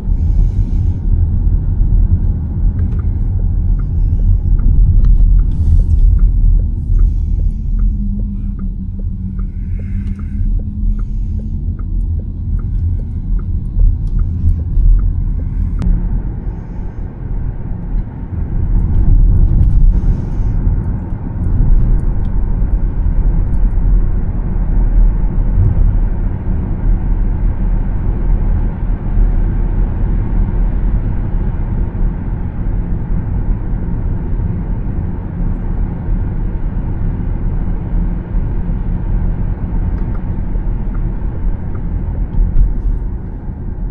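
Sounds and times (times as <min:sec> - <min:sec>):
road and tyre noise: 0:00.0 - 0:43.9
faint regular ticking: 0:02.1 - 0:15.9.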